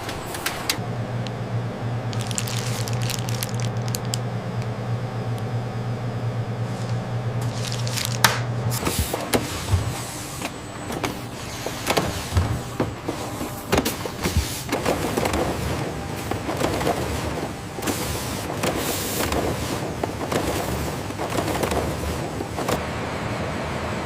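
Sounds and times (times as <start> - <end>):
factory machinery hum: 0.0 - 24.0
machinery clicking and rattling: 2.1 - 4.2, 10.9 - 22.8.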